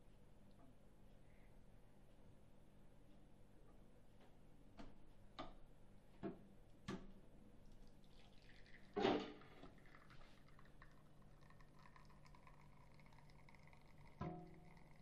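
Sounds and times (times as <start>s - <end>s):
coffee dripping: 7.5s - 15.0s
short splash-like clatter: 8.6s - 10.4s
espresso machine humming: 9.6s - 15.0s.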